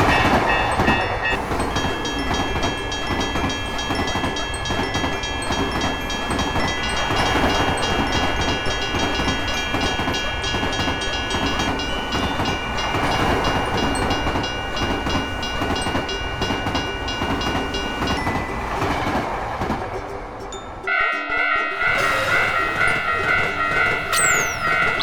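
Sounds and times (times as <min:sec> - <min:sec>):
train rumbling: 0:00.0 - 0:25.0
high ringing tone: 0:21.9 - 0:25.0.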